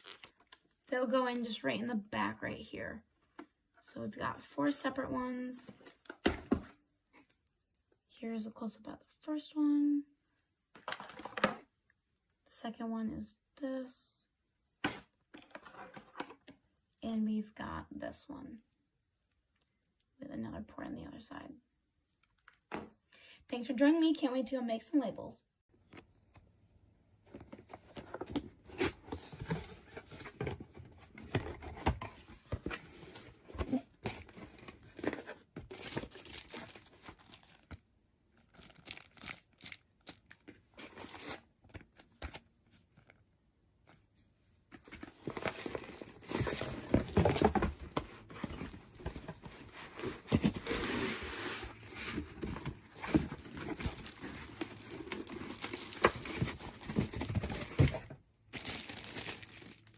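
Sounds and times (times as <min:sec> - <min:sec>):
material crinkling and rustling: 0:00.0 - 0:00.6.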